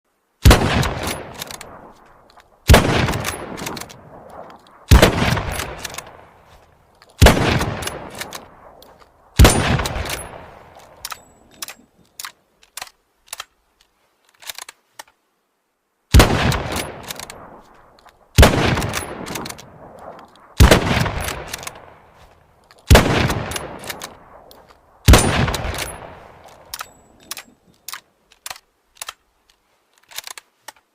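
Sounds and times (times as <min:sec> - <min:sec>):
rifle shots echoing: 0:00.4 - 0:06.6, 0:07.2 - 0:11.6, 0:16.1 - 0:22.2, 0:22.9 - 0:27.3
metallic rifle bolt clicks: 0:00.8 - 0:15.2, 0:16.2 - 0:30.9.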